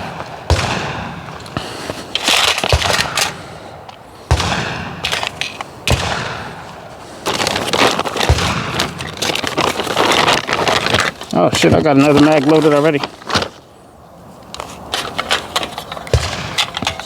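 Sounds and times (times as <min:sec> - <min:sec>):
gunshots with echo: 0:00.0 - 0:01.4, 0:04.2 - 0:06.8, 0:16.1 - 0:16.8.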